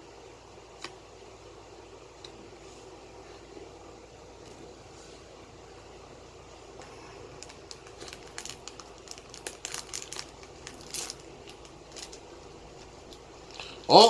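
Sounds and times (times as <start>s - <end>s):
trading cards crinkling: 6.8s - 13.8s.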